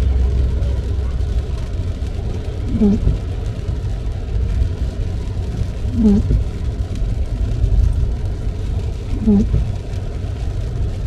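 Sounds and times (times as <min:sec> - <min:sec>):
windshield wiper groaning: 0:00.0 - 0:03.8, 0:04.5 - 0:06.8, 0:07.4 - 0:10.0
road and tyre rumble: 0:00.0 - 0:11.0.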